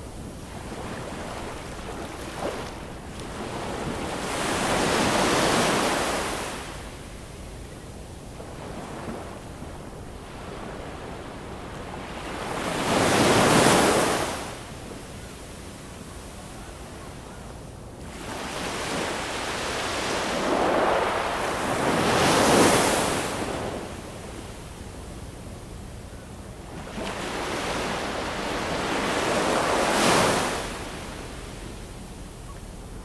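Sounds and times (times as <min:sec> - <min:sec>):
ocean waves washing in: 0:18.2 - 0:23.9.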